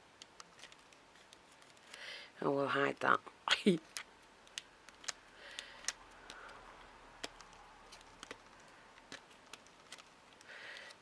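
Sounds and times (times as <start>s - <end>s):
light clicks and taps of craft pieces: 3.8s - 11.0s.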